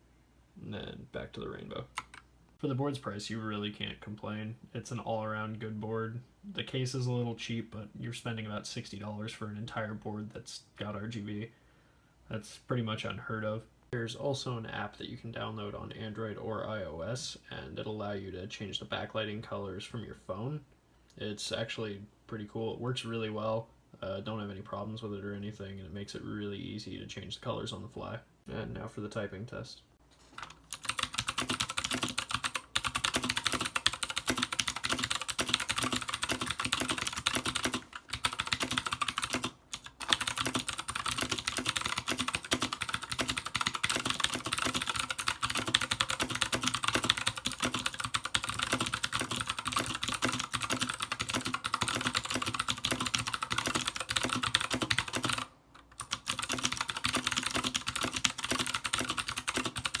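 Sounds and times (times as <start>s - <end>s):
mechanical keyboard typing: 30.4s - 60.0s.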